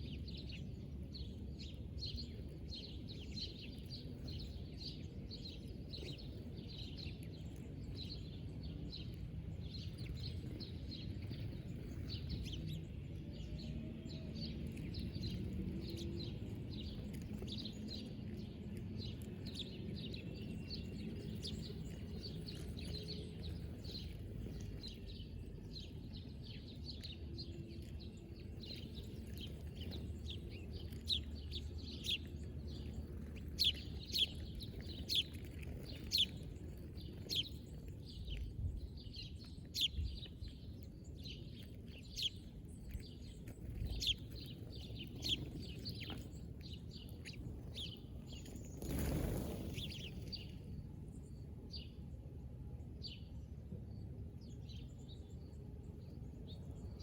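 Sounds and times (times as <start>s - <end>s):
low background rumble: 0.0s - 57.0s
small birds chirping: 0.0s - 57.0s.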